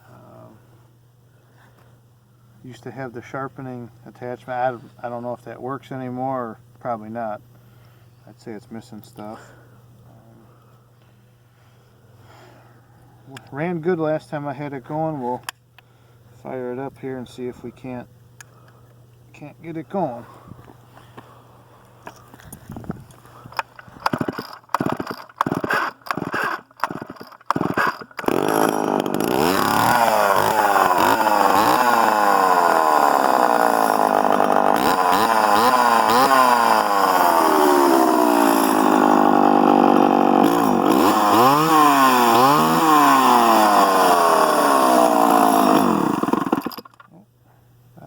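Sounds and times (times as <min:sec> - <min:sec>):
chainsaw starting and revving: 0:24.0 - 0:47.0.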